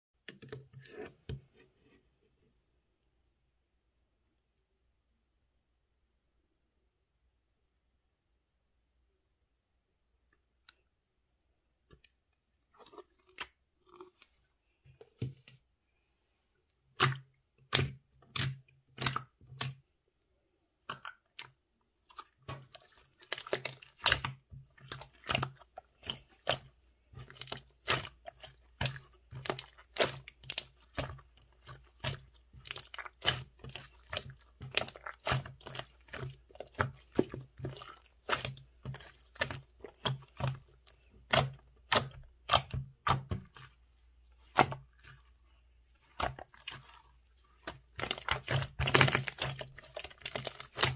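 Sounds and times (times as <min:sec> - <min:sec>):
slime squished with sticky pops: 0:47.6 - 0:50.9.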